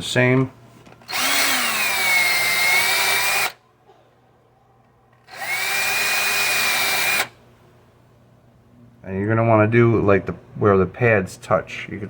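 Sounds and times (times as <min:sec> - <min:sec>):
power drill whining: 0:01.0 - 0:03.6, 0:05.2 - 0:07.3.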